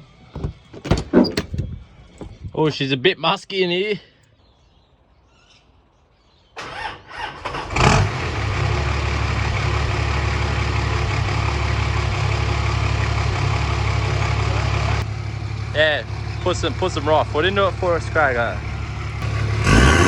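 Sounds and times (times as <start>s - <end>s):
engine cranking: 0.0s - 2.4s
engine idling rumble: 8.1s - 20.0s.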